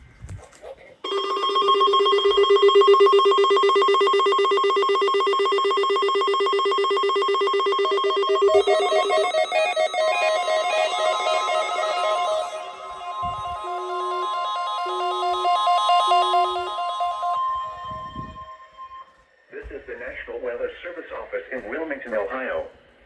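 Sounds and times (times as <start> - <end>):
electronic alert tone trilling: 1.1 - 19.3
stepping electronic ringtone notes: 1.1 - 19.5.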